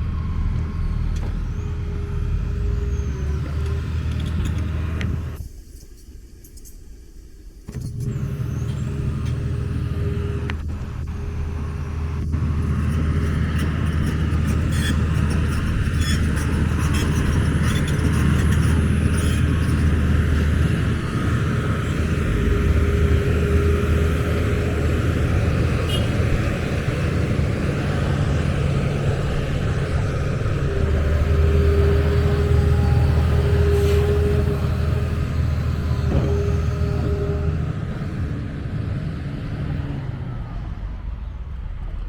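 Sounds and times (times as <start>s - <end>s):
traffic rumble: 0.0s - 5.6s, 7.8s - 42.0s
faint engine hum: 0.0s - 42.0s.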